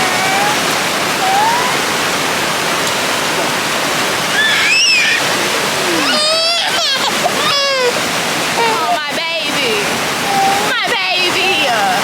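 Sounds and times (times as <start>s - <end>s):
waterfall rushing: 0.0s - 12.0s
high-pitched voice: 1.2s - 1.8s.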